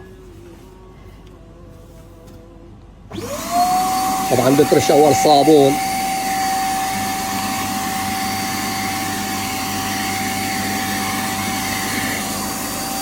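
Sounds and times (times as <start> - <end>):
spot cleaner motor whine: 3.1 - 13.0.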